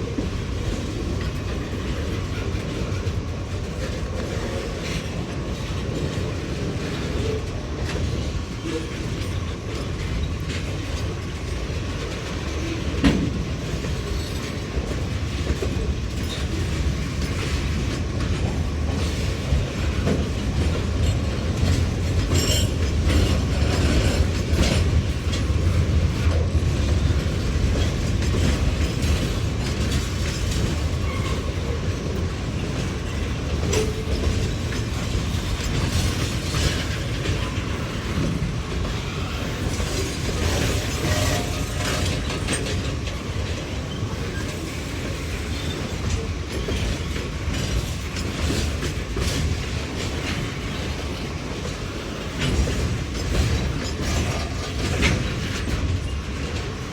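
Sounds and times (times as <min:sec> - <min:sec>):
train wheels clacking on rail joints: 0:00.0 - 0:56.9.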